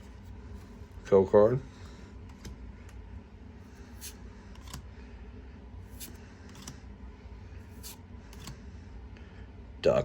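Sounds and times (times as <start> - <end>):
trading cards sliding swish: 3.8 - 4.8, 5.9 - 6.8, 7.7 - 8.6.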